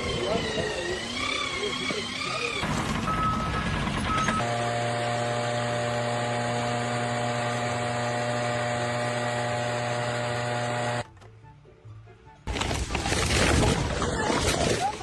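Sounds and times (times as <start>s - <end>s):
machine hum with low drone: 3.9s - 11.1s.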